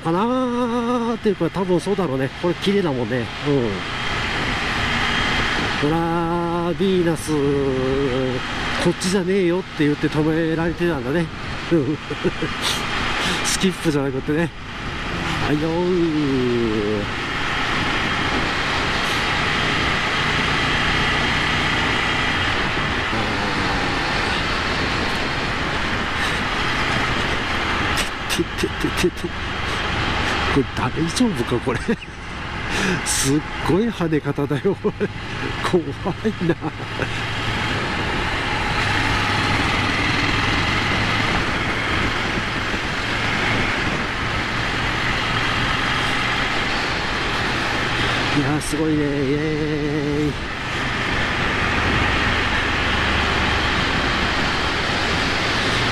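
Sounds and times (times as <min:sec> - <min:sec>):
road noise: 0:00.0 - 0:55.9
wind on microphone: 0:04.1 - 0:06.0, 0:14.5 - 0:28.4, 0:36.7 - 0:48.4
motorcycle engine cruising: 0:14.5 - 0:28.4, 0:34.8 - 0:55.9.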